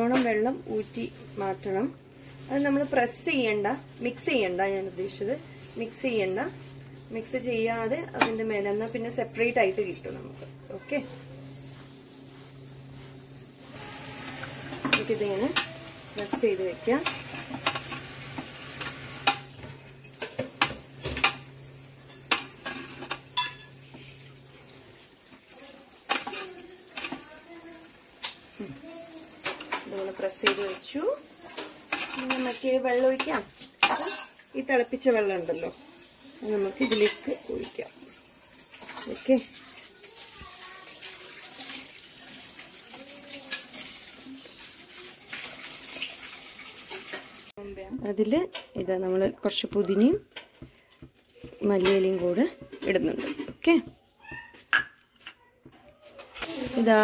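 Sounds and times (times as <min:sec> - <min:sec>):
water pouring and splashing: 0:13.0 - 0:47.6, 0:56.2 - 0:57.0.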